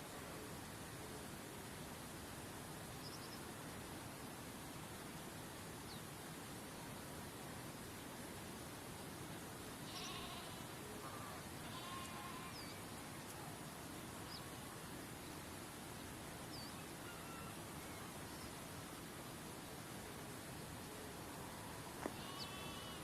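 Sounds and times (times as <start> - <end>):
bird calls: 22.0 - 23.0.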